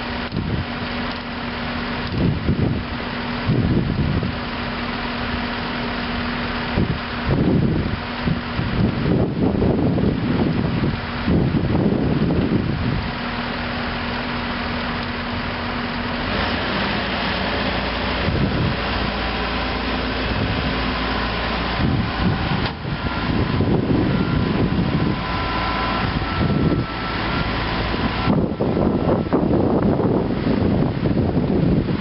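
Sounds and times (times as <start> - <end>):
wind buffeting microphone: 0.0 - 0.8, 1.9 - 14.4, 15.2 - 32.0
diesel engine running: 0.0 - 32.0
thin whining tones: 17.6 - 30.4.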